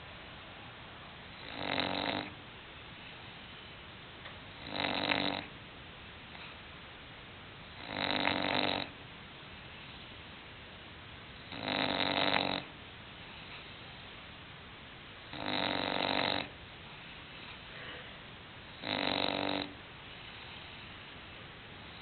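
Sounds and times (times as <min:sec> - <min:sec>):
dog snoring: 0:01.3 - 0:02.4, 0:04.5 - 0:05.6, 0:07.7 - 0:09.0, 0:11.4 - 0:13.8, 0:15.2 - 0:16.6, 0:18.7 - 0:20.9.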